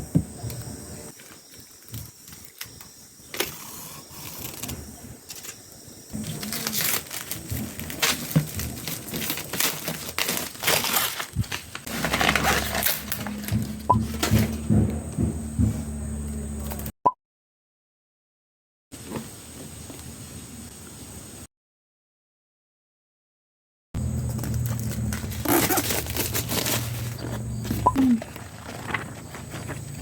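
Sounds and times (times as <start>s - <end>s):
packaging crinkling and rustling: 6.2s - 14.5s, 24.2s - 30.0s.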